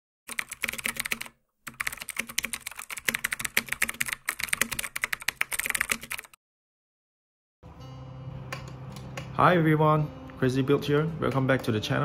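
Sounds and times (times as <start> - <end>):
rapid typing on keyboard: 0.3 - 6.4.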